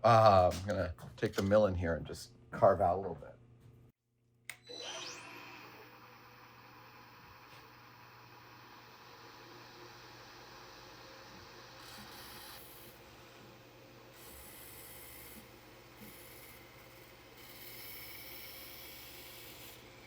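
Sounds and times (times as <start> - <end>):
milling cutter rasping: 11.5 - 13.0, 14.2 - 20.0.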